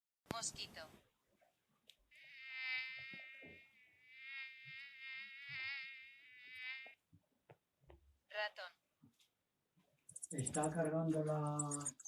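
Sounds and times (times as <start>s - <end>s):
mosquito buzzing: 2.1s - 7.0s.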